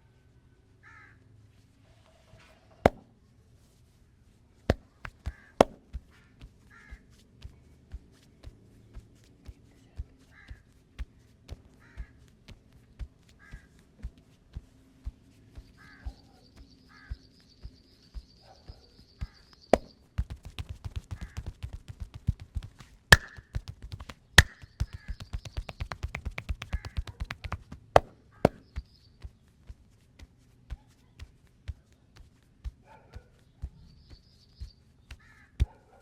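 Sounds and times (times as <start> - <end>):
crows cawing: 0.8 - 1.2, 6.7 - 7.0, 10.3 - 10.6, 11.7 - 12.2, 13.4 - 13.8, 15.8 - 16.2, 16.9 - 17.2, 35.2 - 35.6
fast chopping taps: 4.7 - 5.8, 19.8 - 28.8
hand slaps on body: 4.7 - 5.9, 19.8 - 28.8.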